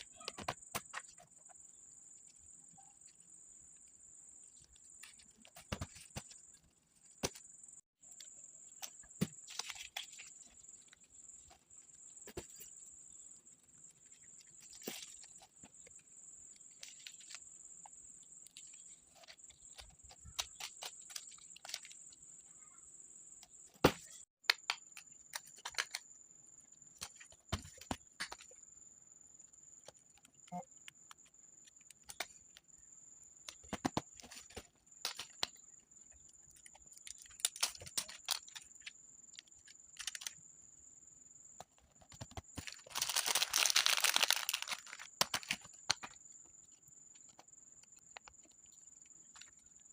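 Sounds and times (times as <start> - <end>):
paper rustling: 8.8 - 12.7, 42.1 - 46.1.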